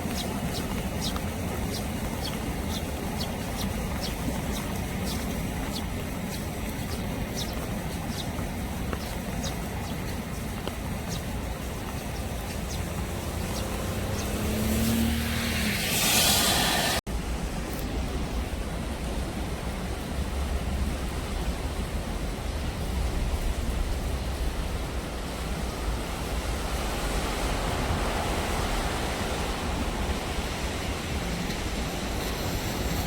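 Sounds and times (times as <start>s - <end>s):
flowing stream: 0.0s - 33.0s
rain rushing: 0.0s - 33.0s
vehicle passing: 9.0s - 17.0s.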